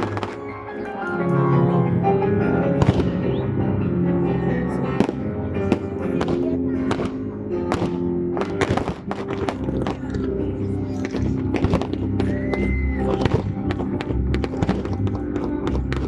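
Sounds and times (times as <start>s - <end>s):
fireworks bangs: 0.0s - 0.5s, 2.8s - 3.2s, 5.0s - 10.0s, 11.2s - 16.0s
music playing: 0.0s - 16.0s.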